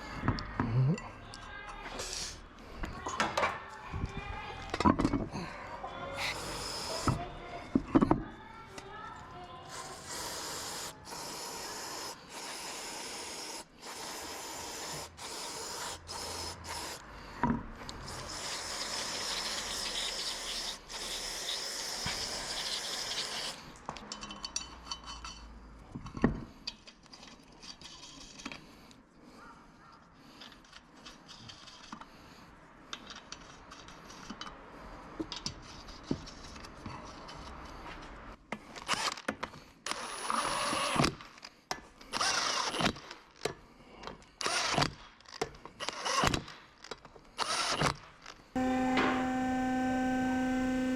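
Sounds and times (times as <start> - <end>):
hissing rubbing strokes: 9.6 - 17.0, 17.9 - 23.6.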